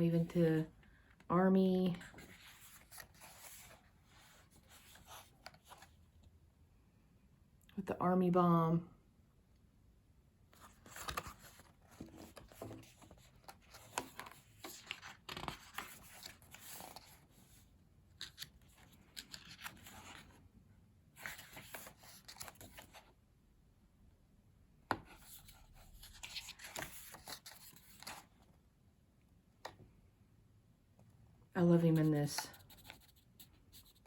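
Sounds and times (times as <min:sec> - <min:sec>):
paper rustling and sliding: 0:02.1 - 0:05.9, 0:10.6 - 0:17.6, 0:21.2 - 0:23.0, 0:25.2 - 0:28.2.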